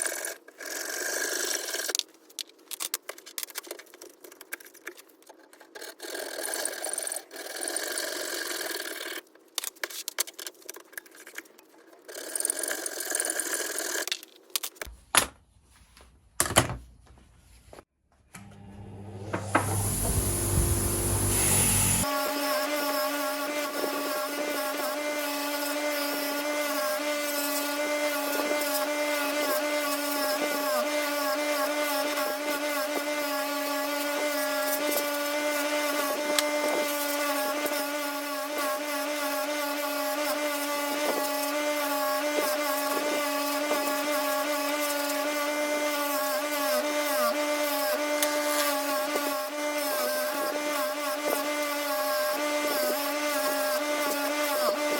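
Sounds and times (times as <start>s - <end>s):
power tool motor humming: 18.4s - 54.9s.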